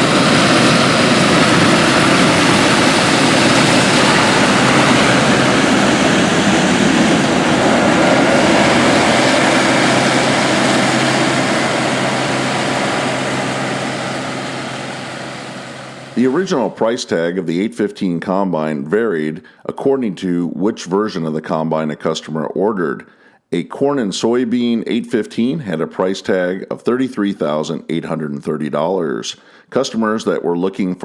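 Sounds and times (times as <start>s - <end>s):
combine harvester droning: 0.0s - 16.8s.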